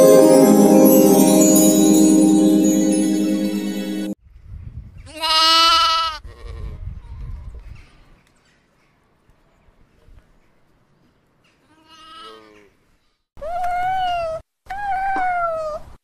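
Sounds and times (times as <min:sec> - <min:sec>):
music: 0:00.0 - 0:04.2.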